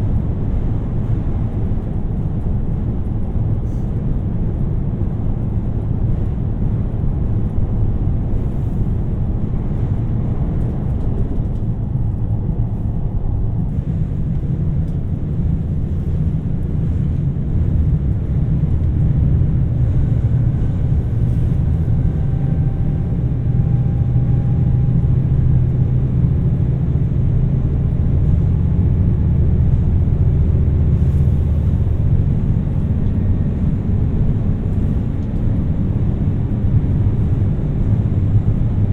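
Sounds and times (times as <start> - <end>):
diesel railcar rumbling: 0.0 - 38.9
faint whine: 17.6 - 26.9.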